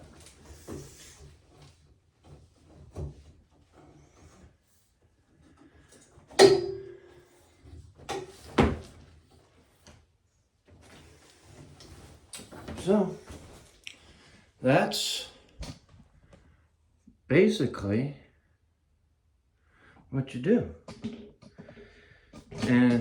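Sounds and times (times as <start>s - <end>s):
short ringing hum: 6.4s - 7.2s.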